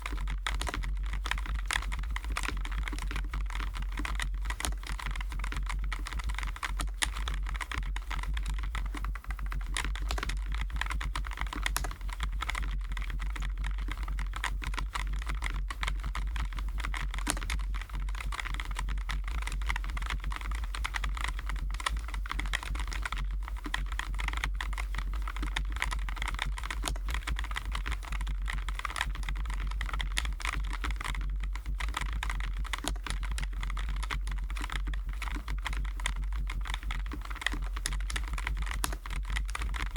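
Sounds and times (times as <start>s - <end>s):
fast typing on keyboard: 0.0s - 39.9s
steady low hum: 0.0s - 39.9s.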